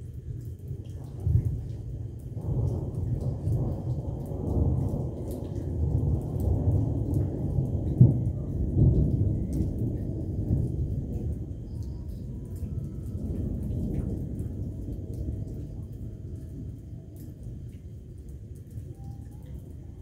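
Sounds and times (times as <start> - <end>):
rolling thunder: 0.0 - 20.0
thunder crack: 2.3 - 17.0.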